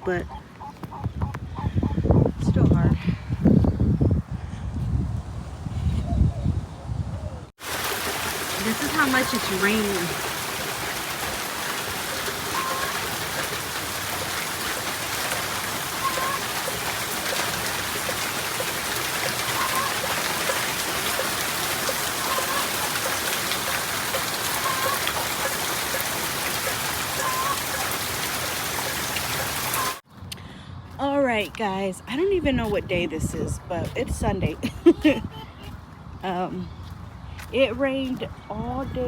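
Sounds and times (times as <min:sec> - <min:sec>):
steady rain falling: 0:07.6 - 0:30.0.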